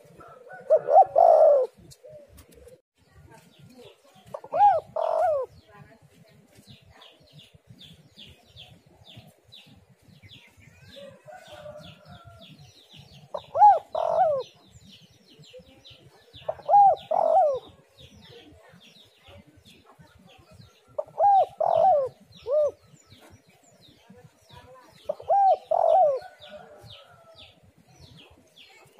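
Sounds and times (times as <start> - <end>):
dove cooing: 0.0 - 2.8, 4.3 - 5.6, 13.1 - 14.6, 16.3 - 18.2, 20.9 - 23.0, 25.1 - 26.8.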